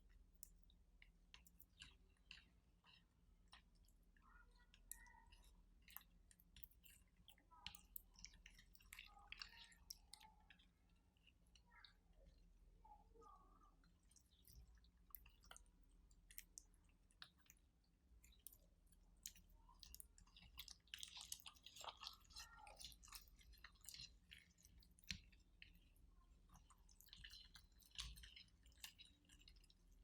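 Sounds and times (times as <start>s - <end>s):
slime squishing by hand: 13.6s - 30.0s.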